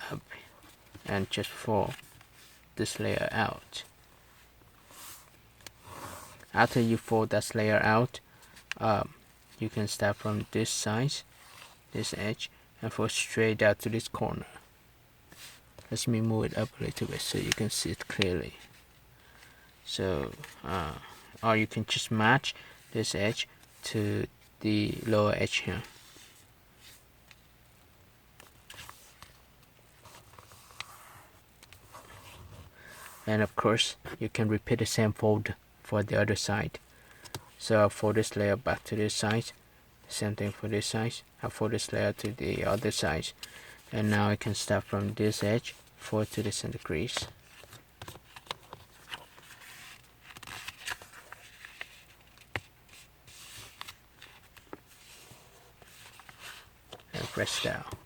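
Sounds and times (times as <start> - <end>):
paper rustling and crinkling: 42.2 - 58.0.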